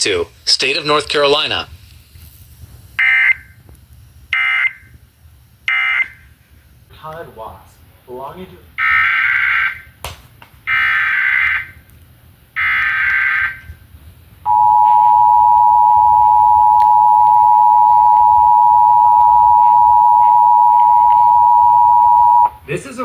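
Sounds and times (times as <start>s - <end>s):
two-tone attention signal: 14.5s - 22.5s.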